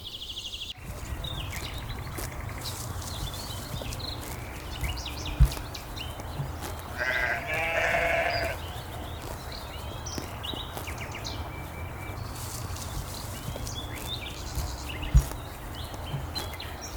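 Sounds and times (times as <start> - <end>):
sharp thump: 4.8 - 5.8, 14.6 - 15.4
lamb bleating: 6.9 - 8.7.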